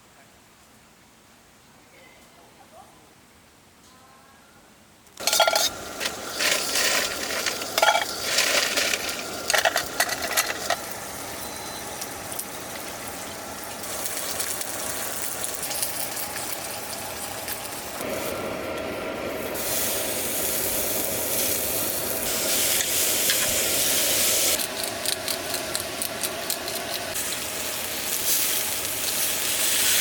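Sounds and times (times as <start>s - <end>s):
utensils clinking and scraping pan: 5.2s - 10.9s
food sizzling in a hot pan: 5.2s - 18.6s, 19.2s - 30.0s.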